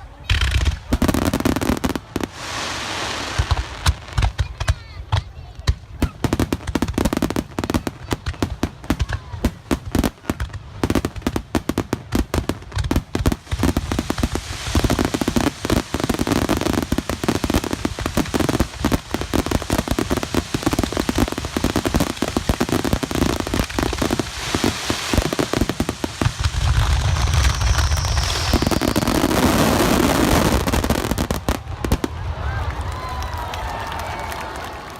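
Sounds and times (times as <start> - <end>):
fireworks bangs and crackling: 0.0 - 34.6
low firework booms: 10.3 - 32.8.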